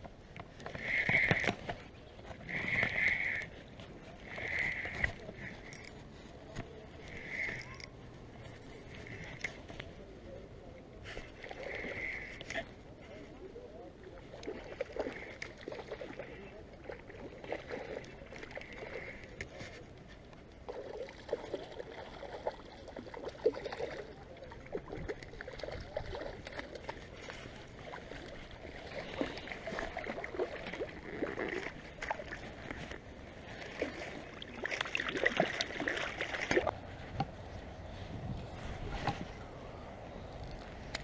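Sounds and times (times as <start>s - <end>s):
stream water splashing: 14.1s - 38.0s.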